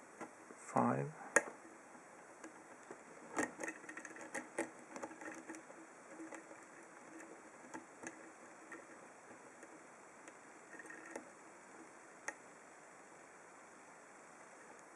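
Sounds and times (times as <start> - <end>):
lock pick clicking and scraping: 1.3 - 11.3.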